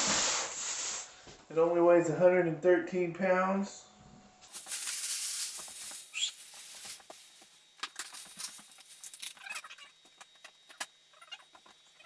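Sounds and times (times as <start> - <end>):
short high bird chirp: 6.1 - 6.4.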